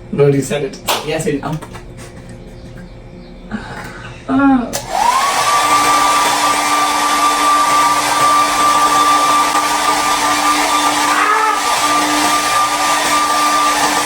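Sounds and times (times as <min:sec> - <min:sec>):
hair dryer blowing: 0:04.7 - 0:14.0.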